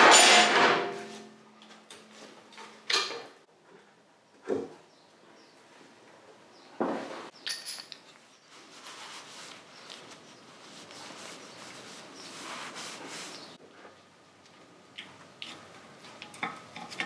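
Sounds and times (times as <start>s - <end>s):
ringing metal clink: 7.4s - 8.0s.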